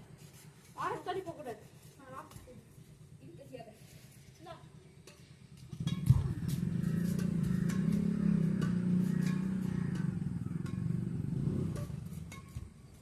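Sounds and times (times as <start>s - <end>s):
vehicle engine humming: 5.2s - 13.0s.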